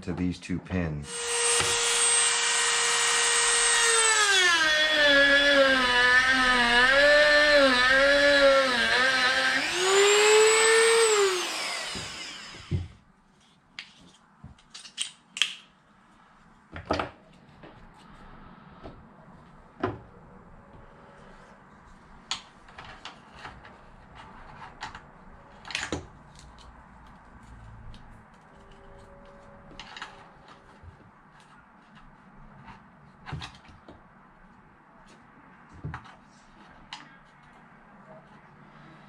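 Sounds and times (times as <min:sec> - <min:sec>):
rotary tool whining: 0:01.1 - 0:12.9.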